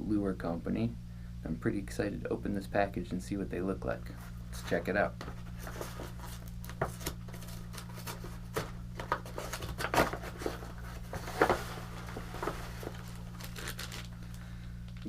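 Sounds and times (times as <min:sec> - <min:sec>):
steady low hum: 0:00.0 - 0:15.0
packaging crinkling and tearing: 0:05.6 - 0:15.0.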